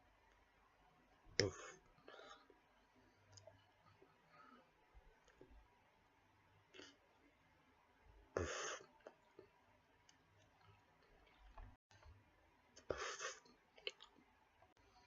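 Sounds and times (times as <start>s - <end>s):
small mouth clicks: 13.8s - 14.2s.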